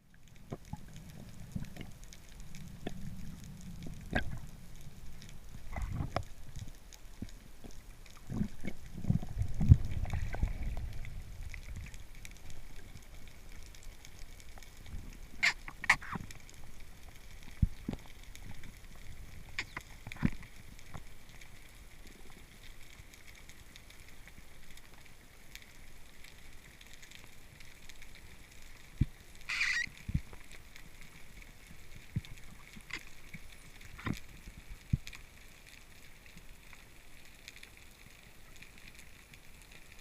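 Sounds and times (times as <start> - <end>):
faint underwater noise: 0.0 - 40.0.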